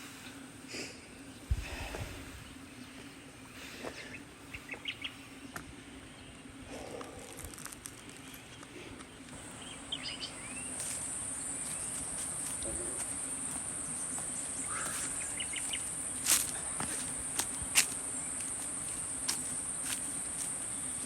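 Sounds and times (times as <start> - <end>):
insects shrilling: 6.7 - 8.6.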